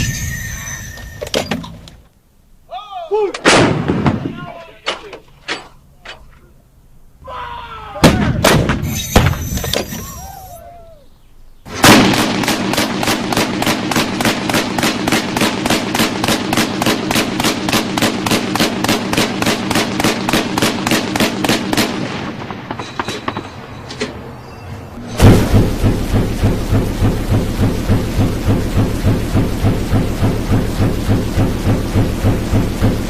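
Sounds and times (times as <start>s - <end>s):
gunshots: 3.4s - 4.4s, 8.0s - 10.2s, 11.7s - 23.6s, 25.2s - 33.0s
automatic gunfire: 11.8s - 22.5s.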